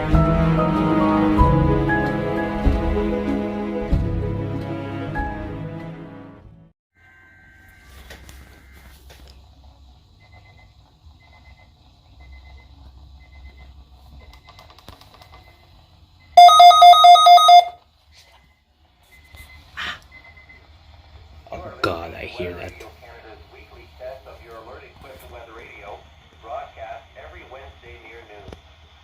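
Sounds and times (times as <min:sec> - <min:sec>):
faint steady electronic tones: 0:10.1 - 0:13.8, 0:15.3 - 0:20.7
rapidly pulsing electronic beep: 0:16.4 - 0:17.8.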